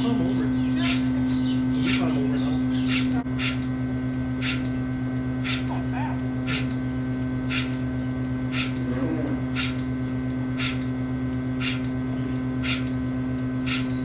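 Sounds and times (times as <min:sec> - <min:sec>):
farm machinery droning: 0:00.0 - 0:14.0
hissing tick: 0:06.1 - 0:13.5.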